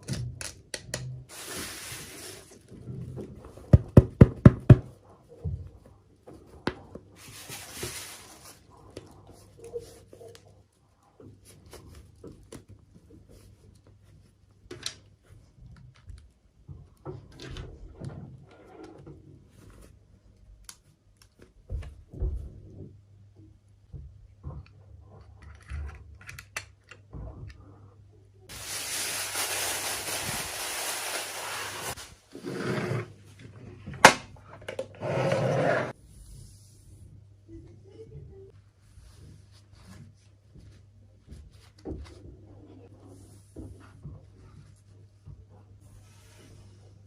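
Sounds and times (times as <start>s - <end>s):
packaging rustling: 1.3s - 2.7s, 7.2s - 8.7s, 28.5s - 32.2s.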